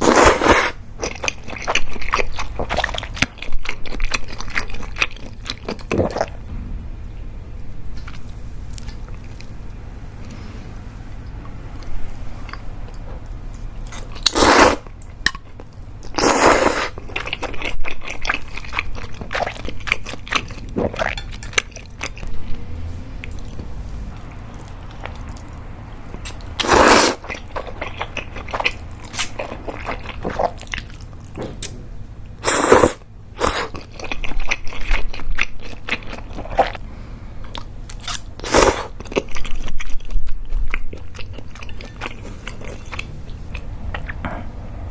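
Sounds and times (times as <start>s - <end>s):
noodles being slurped: 13.9s - 14.9s, 16.2s - 17.6s, 26.2s - 30.8s, 32.4s - 35.0s.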